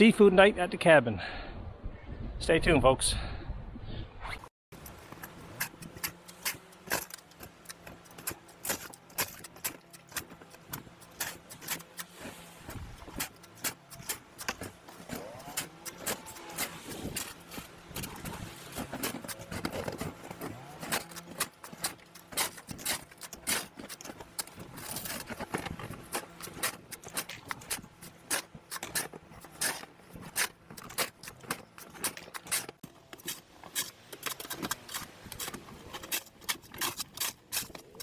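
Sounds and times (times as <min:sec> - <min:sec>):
footsteps crunching in snow: 0:04.8 - 0:32.8
snow shovel scraping snow: 0:04.8 - 0:38.0.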